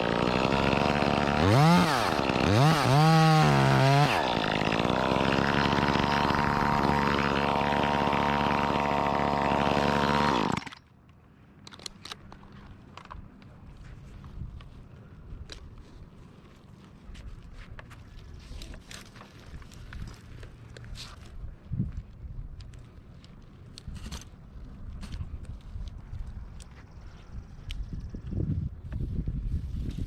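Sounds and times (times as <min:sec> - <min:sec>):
chainsaw revving: 0:00.0 - 0:10.8.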